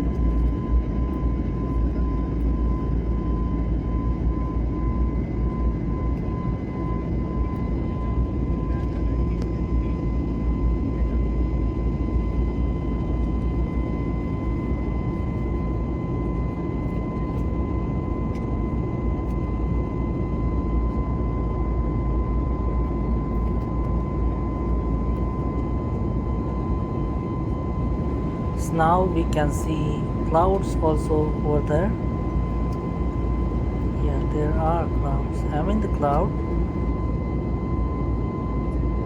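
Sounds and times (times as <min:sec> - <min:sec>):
jet engines rumbling: 0:24.6 - 0:39.0
thin steady whine: 0:24.6 - 0:39.0.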